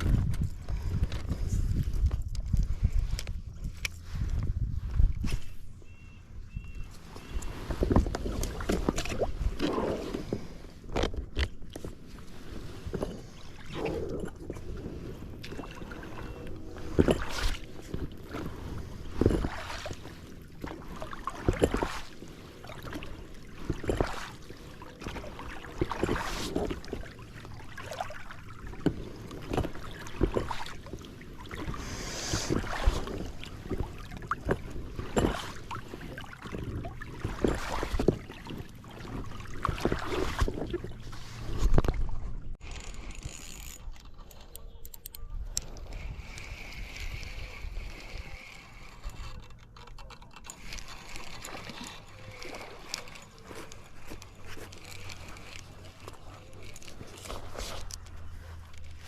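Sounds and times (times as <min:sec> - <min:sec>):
wind on microphone: 0:00.0 - 0:11.4
oars knocking and splashing: 0:06.6 - 0:44.3, 0:45.6 - 0:59.0.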